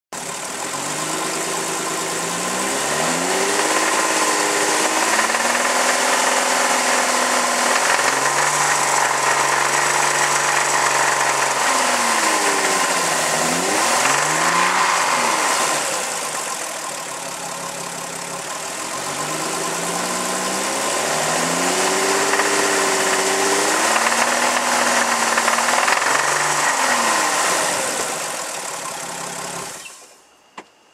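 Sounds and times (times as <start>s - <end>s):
engine knocking: 0.2s - 6.3s, 7.6s - 13.1s, 13.8s - 21.0s, 22.2s - 27.1s
car engine revving: 0.2s - 29.8s.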